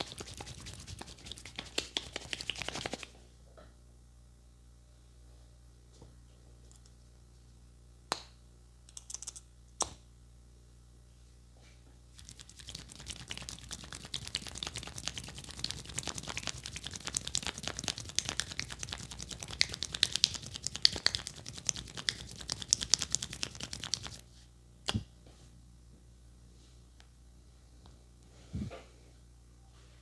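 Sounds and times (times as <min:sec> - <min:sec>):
hands rubbing hair and scalp: 0:00.0 - 0:03.1, 0:12.2 - 0:24.2.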